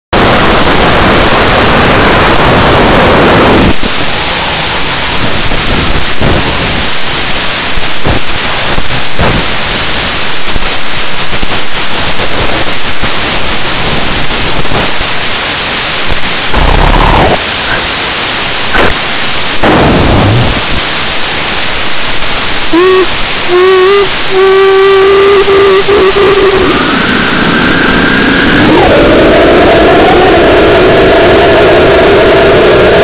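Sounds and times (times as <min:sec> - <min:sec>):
white-noise static hiss: 0:00.2 - 0:33.0.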